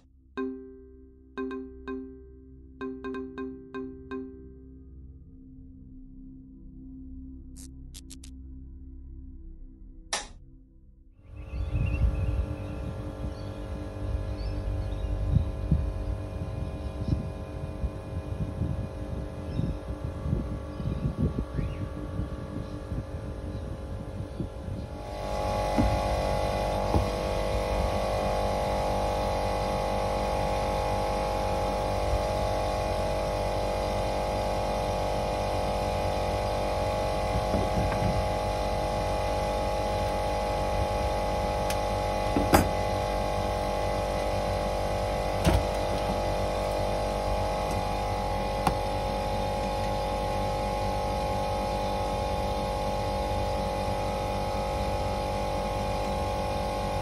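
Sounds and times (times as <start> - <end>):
sharp clicks: 7.6 - 8.3
air conditioner humming: 11.4 - 57.0.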